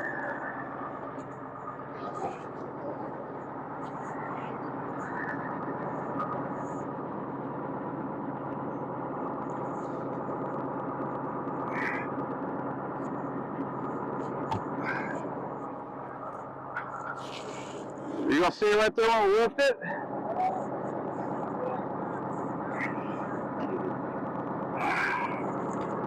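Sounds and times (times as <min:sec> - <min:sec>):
tractor engine running: 0:00.0 - 0:18.4.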